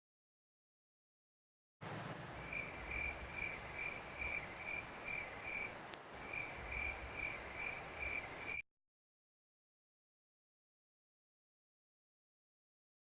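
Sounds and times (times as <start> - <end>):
cricket chirping: 2.4 - 8.6.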